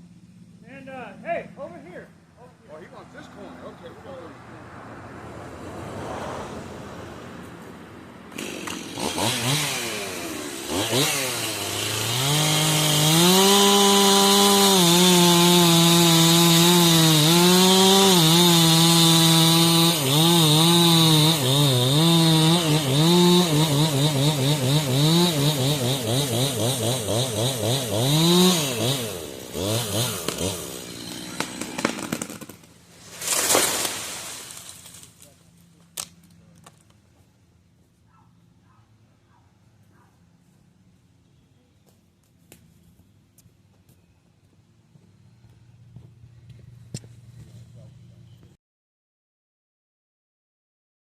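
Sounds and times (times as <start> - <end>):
chainsaw revving and cutting: 8.3 - 35.1.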